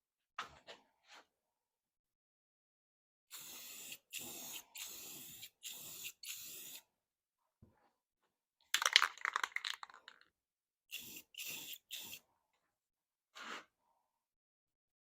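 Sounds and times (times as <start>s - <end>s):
spray paint hissing: 3.4s - 6.8s, 10.9s - 12.2s.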